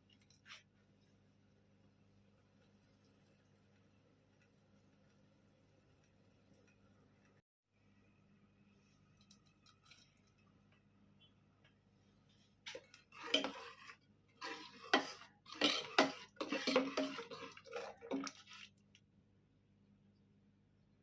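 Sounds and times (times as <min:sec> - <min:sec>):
metal kitchenware clinking and scraping: 0:12.7 - 0:18.5.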